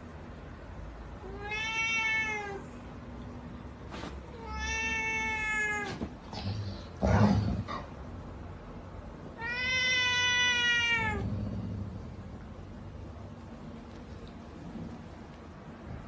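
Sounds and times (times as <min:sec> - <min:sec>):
cat meowing: 0:01.2 - 0:02.8, 0:04.3 - 0:06.1, 0:09.4 - 0:11.2.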